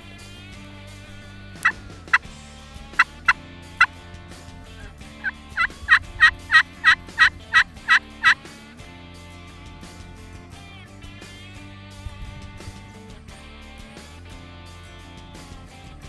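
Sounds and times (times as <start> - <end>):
turkey yelping: 3.0 - 4.0, 4.7 - 8.4.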